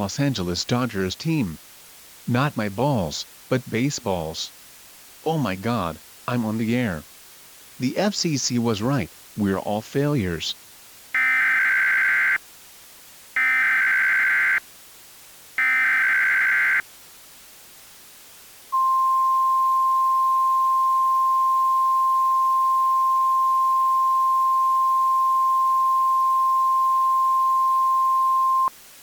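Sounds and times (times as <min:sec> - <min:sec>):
screeching data bursts: 0:13.4 - 0:14.6, 0:15.6 - 0:16.8
steady pure attention tone: 0:18.7 - 0:28.7.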